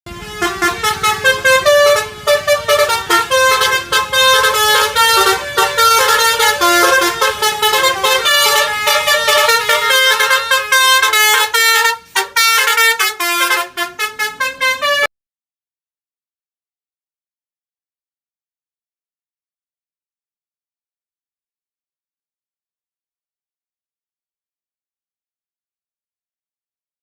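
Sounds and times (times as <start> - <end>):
multi-tone musical bus horn: 0.1 - 15.1.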